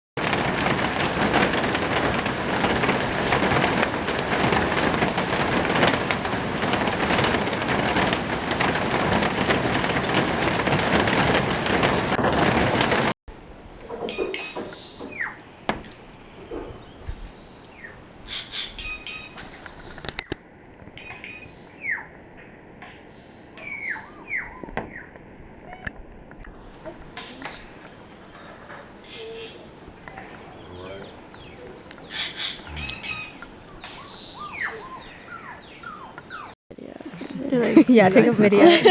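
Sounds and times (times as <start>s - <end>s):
birds calling: 13.8s - 20.4s, 21.0s - 38.5s.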